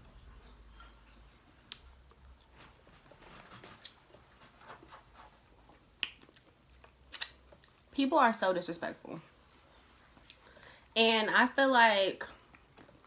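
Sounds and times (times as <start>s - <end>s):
faint chewing: 1.6s - 7.9s, 10.0s - 10.5s, 12.4s - 13.0s.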